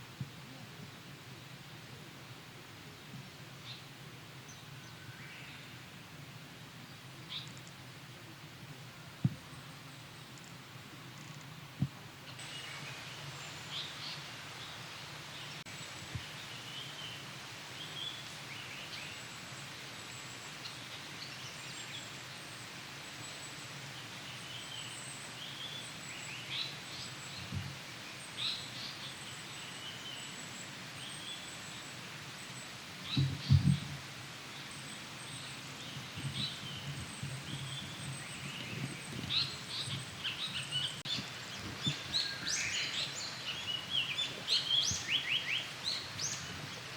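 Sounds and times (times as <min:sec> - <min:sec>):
songbirds chirping: 0:00.0 - 0:46.9
dull low thump: 0:33.2 - 0:33.9.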